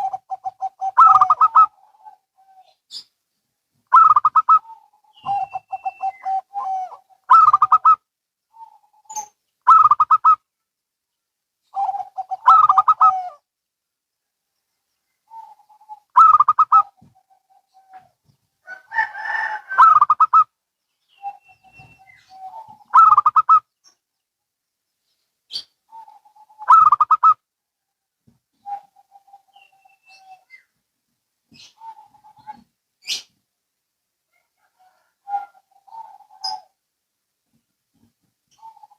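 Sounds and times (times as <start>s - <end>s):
doves cooing: 0.0s - 3.0s, 3.9s - 10.4s, 11.7s - 13.5s, 15.2s - 20.5s, 21.2s - 23.8s, 25.5s - 27.4s, 28.6s - 30.7s, 31.5s - 33.3s, 34.3s - 36.8s, 38.0s - 38.9s.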